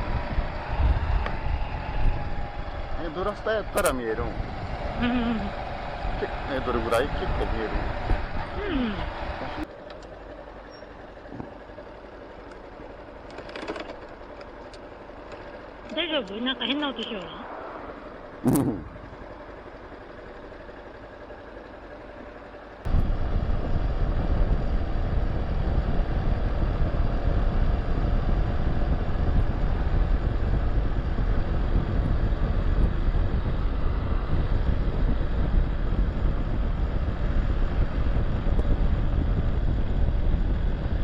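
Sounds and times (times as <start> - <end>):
wind noise on microphone: 0.0 - 9.6, 18.4 - 19.2, 22.9 - 41.0
motorcycle engine running: 0.0 - 41.0.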